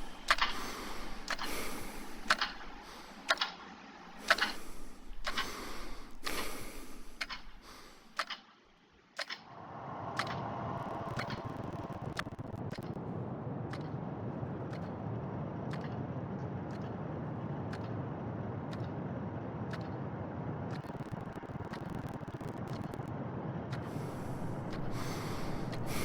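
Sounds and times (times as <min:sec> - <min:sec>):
steady rushing noise: 0:00.0 - 0:08.3, 0:09.4 - 0:26.0
sharp mechanical clicks: 0:00.0 - 0:08.5, 0:09.2 - 0:09.5, 0:10.2 - 0:13.0, 0:14.7 - 0:15.0, 0:15.7 - 0:16.0, 0:16.7 - 0:17.0, 0:18.7 - 0:19.0, 0:19.7 - 0:20.0, 0:20.7 - 0:23.1, 0:23.7 - 0:26.0.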